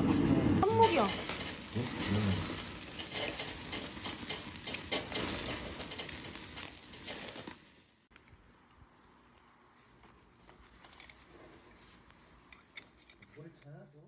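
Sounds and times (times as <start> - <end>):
food sizzling on a grill: 0.6 - 8.1.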